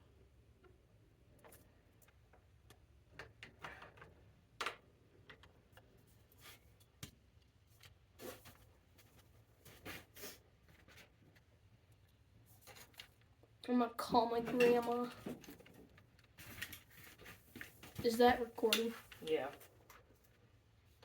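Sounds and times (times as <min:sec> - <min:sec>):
clicks and scrapes of bicycle parts: 0:12.5 - 0:13.4, 0:14.5 - 0:20.1.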